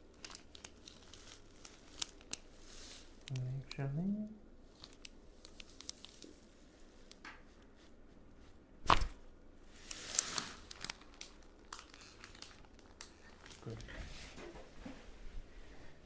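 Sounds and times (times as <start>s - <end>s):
neck joints cracking: 0.0s - 2.5s, 10.2s - 14.0s.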